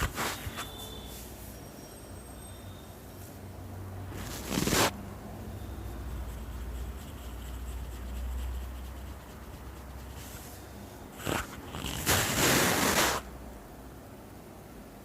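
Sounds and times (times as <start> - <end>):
hands rubbing hair and skin: 4.2 - 5.0, 11.2 - 13.2.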